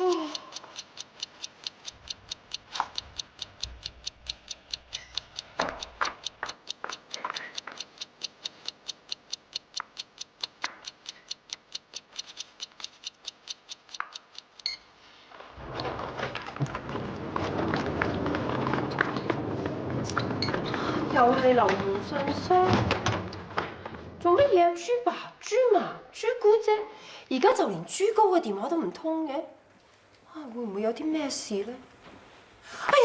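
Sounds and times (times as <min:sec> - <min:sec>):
clock ticking fast: 0:00.0 - 0:14.8.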